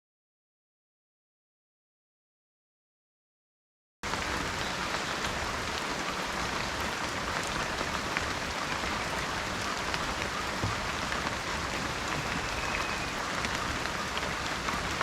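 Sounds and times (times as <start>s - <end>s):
steady rain hiss: 4.0s - 15.0s.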